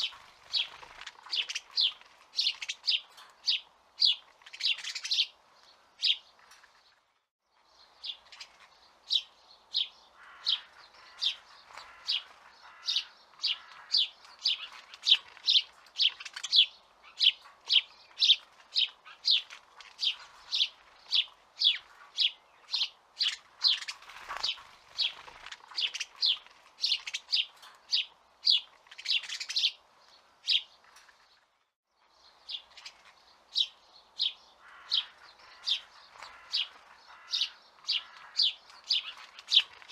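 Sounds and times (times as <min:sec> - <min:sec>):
bird chirping: 0:00.0 - 0:39.9.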